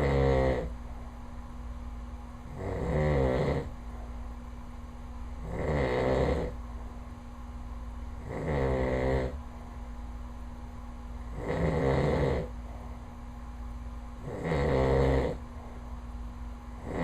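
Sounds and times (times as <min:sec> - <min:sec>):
man snoring: 0:00.0 - 0:00.7, 0:02.5 - 0:03.7, 0:05.4 - 0:06.6, 0:08.2 - 0:09.4, 0:11.3 - 0:12.5, 0:14.2 - 0:15.4.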